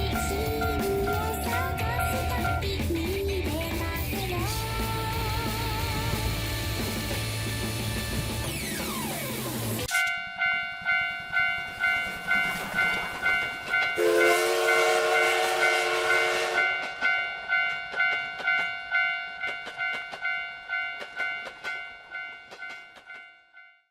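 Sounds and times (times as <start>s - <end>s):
railroad crossing bell ringing: 0.0s - 3.9s, 9.9s - 23.9s
train wheel clatter: 11.2s - 23.6s
train horn: 14.0s - 16.8s.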